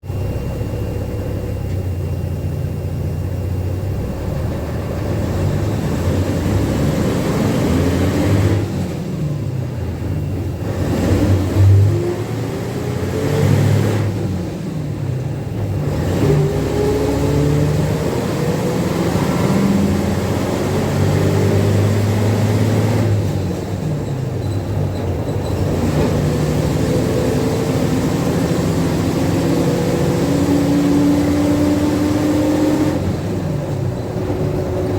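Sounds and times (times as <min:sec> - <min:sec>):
bus engine whining: 0:00.0 - 0:34.9.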